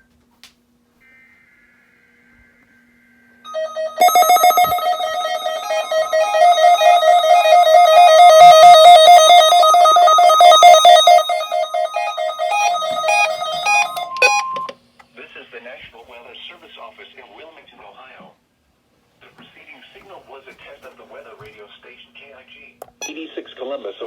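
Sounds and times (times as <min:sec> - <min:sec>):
warbling electronic beeping: 0:03.5 - 0:14.7
faint high data tones: 0:03.5 - 0:14.8, 0:23.0 - 0:23.3.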